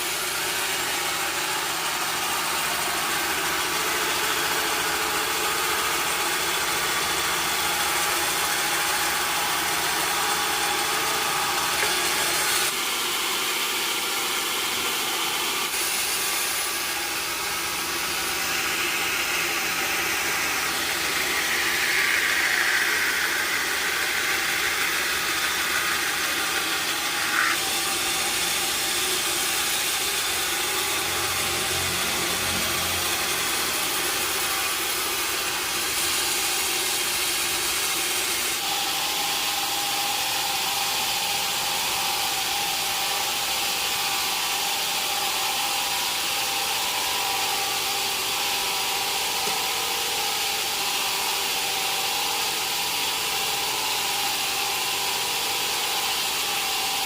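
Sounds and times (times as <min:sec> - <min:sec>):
sawmill machinery running: 0:00.0 - 0:57.0
high-pitched machine tone: 0:15.8 - 0:35.0.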